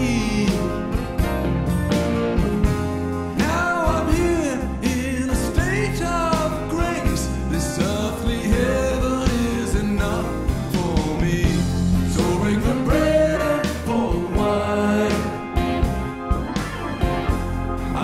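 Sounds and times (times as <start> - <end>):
person singing: 0.0 - 1.0, 3.3 - 15.7
band playing: 0.0 - 18.0
drums beating: 0.4 - 18.0.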